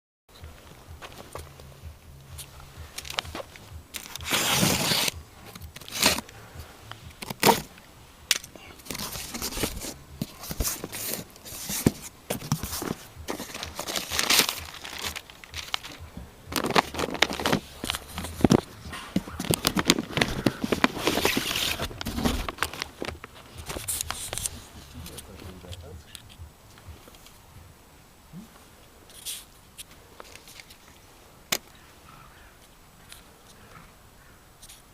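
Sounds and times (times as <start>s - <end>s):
packaging crinkling and tearing: 3.0s - 6.3s, 7.1s - 7.7s, 8.3s - 25.9s.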